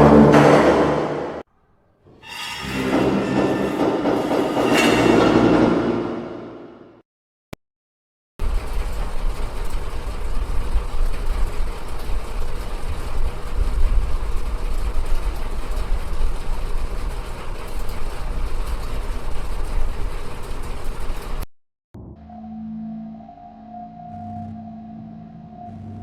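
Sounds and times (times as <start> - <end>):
vehicle running: 0.0 - 1.4.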